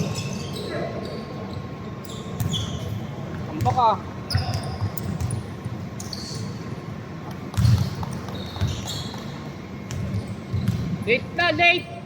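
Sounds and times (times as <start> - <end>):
sneakers squeaking on floor: 0.0 - 12.0
basketball bouncing: 2.4 - 2.7, 3.3 - 5.8, 7.3 - 11.0.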